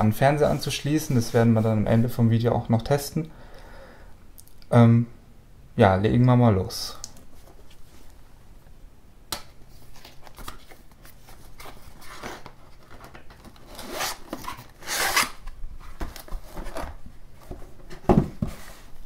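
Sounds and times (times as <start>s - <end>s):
cardboard packaging rustling and tearing: 9.8s - 19.0s.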